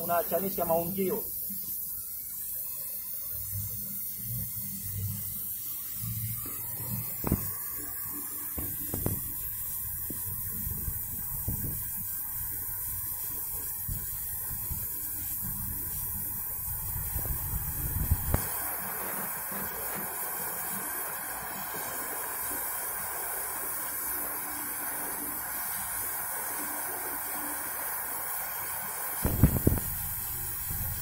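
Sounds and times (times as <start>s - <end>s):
welding torch flame hissing: 0.0s - 31.0s.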